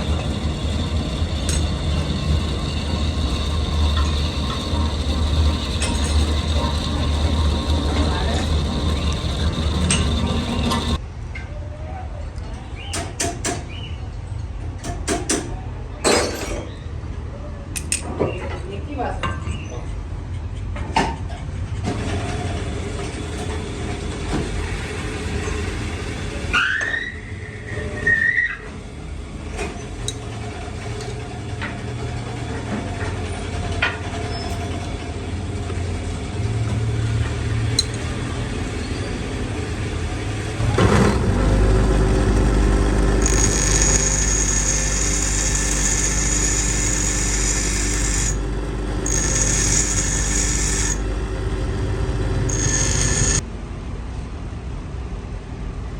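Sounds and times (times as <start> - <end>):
machine humming and whining: 0.0 - 11.0, 29.0 - 53.4
brief high squeal: 26.5 - 28.7.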